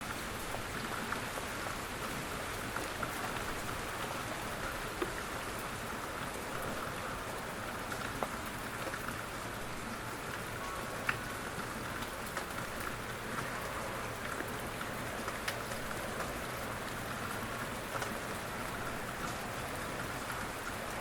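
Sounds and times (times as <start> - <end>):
steady rain hissing: 0.0 - 21.0.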